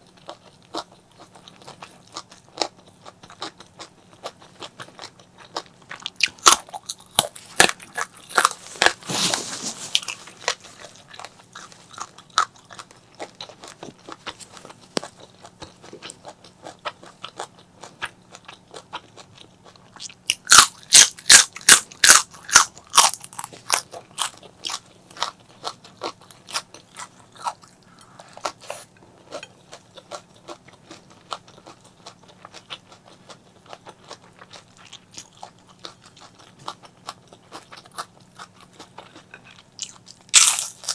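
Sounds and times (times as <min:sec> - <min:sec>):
crunching crisp food: 0:00.0 - 0:40.9.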